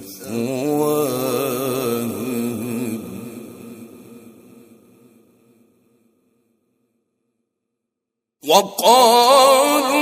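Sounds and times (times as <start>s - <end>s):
man chanting with reverb: 0.0s - 6.0s, 8.4s - 10.0s.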